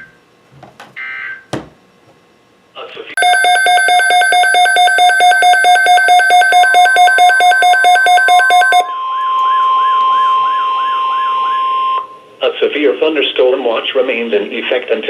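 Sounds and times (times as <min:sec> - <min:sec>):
rapid electronic beeping: 0:03.2 - 0:08.9
steady warning alarm tone: 0:03.2 - 0:12.3
warbling siren: 0:03.2 - 0:12.4.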